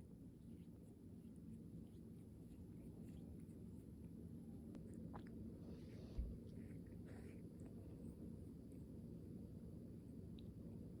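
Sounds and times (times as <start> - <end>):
cat licking fur: 0.2 - 4.1, 4.8 - 9.0.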